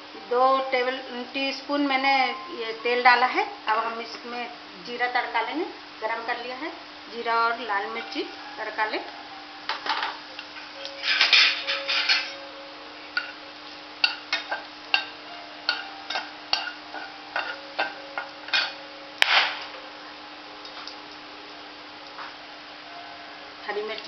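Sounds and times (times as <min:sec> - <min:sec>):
steady low hum: 0:00.0 - 0:24.0
seeds sizzling in hot oil: 0:03.1 - 0:24.0
metal spoon clinking on pan: 0:10.9 - 0:12.4, 0:15.7 - 0:19.4.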